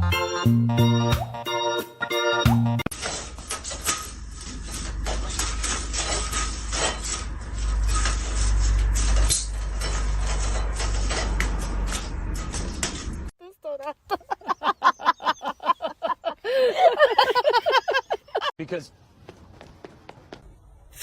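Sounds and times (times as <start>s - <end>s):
organ music: 0.0s - 2.9s.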